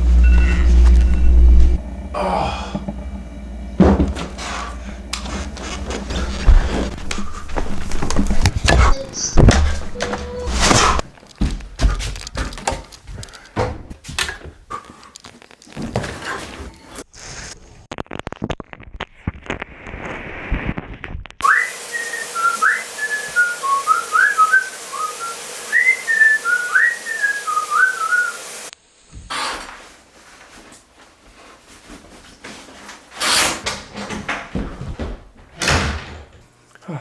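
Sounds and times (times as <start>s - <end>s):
person whistling a tune: 21.4s - 28.4s
steady hiss: 21.4s - 30.0s.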